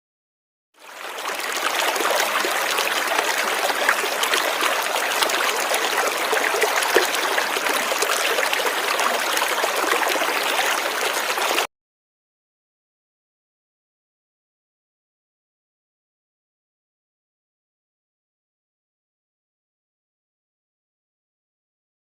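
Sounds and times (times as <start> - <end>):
river water flowing: 0.8 - 11.7.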